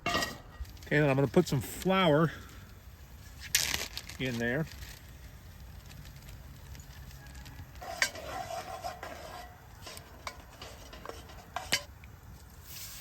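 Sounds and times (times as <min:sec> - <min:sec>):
utensil stirring and scraping pot: 0:07.3 - 0:11.9.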